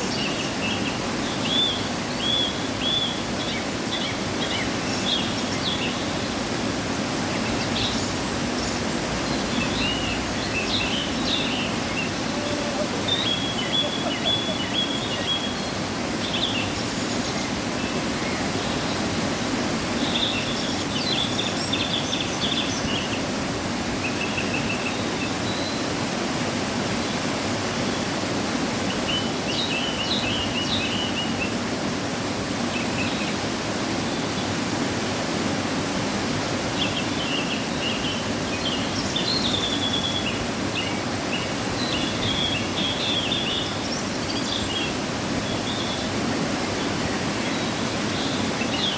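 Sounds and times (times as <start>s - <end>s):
waterfall rushing: 0.0s - 48.9s
small birds chirping: 7.1s - 19.1s.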